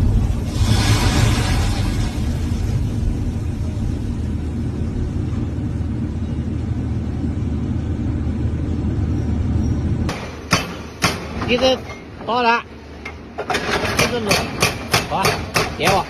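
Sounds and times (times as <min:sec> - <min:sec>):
loud rushing crash: 0:00.0 - 0:04.4
machinery engine rumbling: 0:00.0 - 0:14.3.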